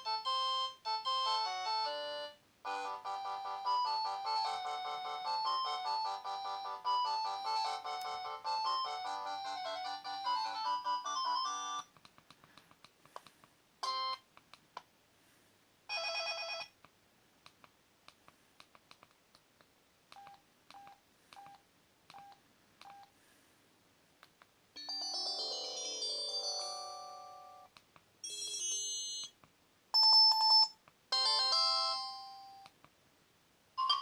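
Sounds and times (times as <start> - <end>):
phone ringtone melody: 0.0 - 11.9, 13.8 - 14.2, 15.9 - 16.7, 24.8 - 29.4, 30.0 - 32.7.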